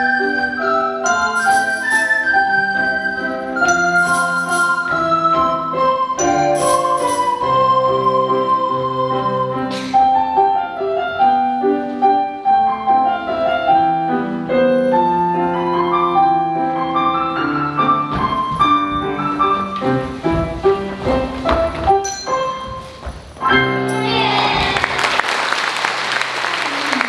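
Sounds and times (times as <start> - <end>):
recorder ensemble playing: 0.0 - 9.9.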